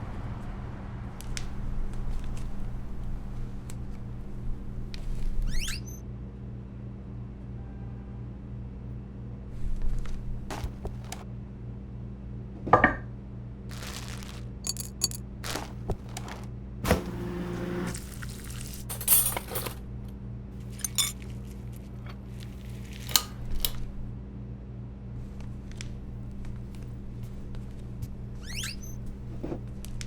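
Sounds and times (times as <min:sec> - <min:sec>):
dishes and cutlery clinking: 0:14.7 - 0:15.7, 0:18.9 - 0:19.8, 0:20.7 - 0:21.4.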